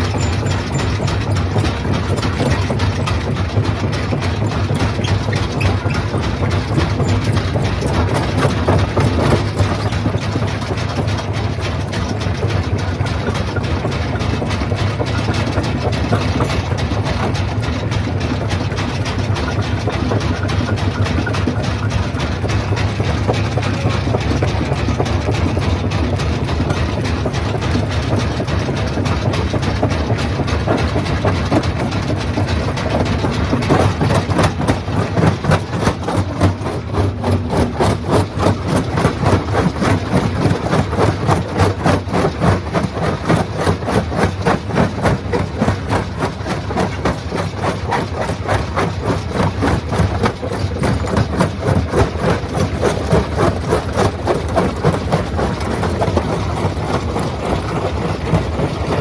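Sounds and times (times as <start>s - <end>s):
heavy engine drone: 0.0s - 43.1s.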